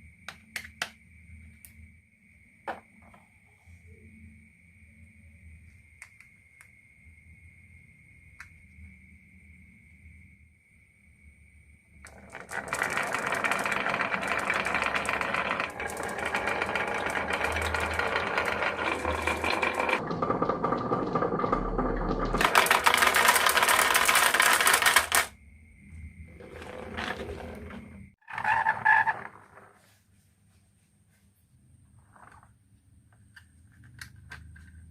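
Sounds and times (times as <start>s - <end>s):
marbles clattering down marble run: 12.1s - 25.3s, 26.4s - 29.4s.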